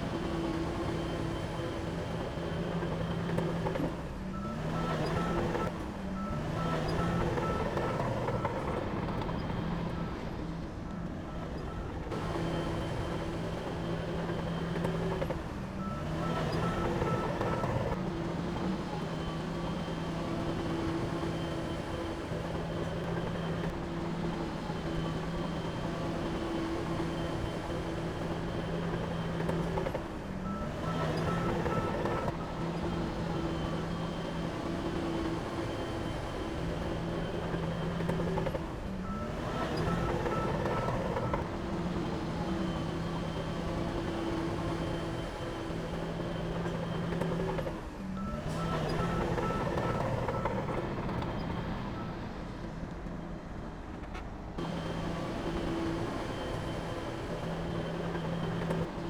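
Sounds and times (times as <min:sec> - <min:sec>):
heavy machinery engine running: 0:00.0 - 0:59.0
reversing alarm beeping: 0:00.5 - 0:10.3, 0:11.3 - 0:52.4.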